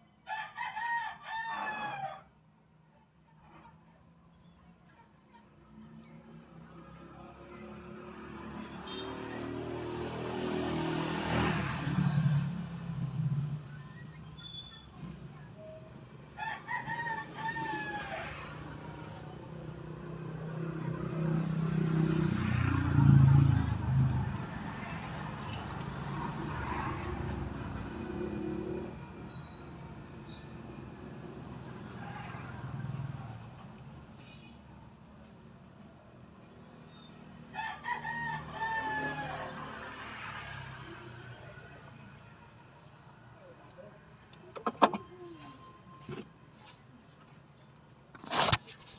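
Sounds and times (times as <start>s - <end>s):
rooster crowing: 0.2s - 2.3s, 16.4s - 18.7s, 37.5s - 40.3s.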